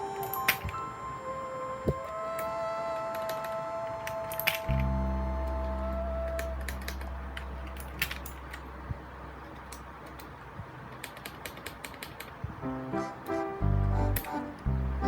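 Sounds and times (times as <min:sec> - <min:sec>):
mechanical keyboard typing: 0:10.9 - 0:12.4.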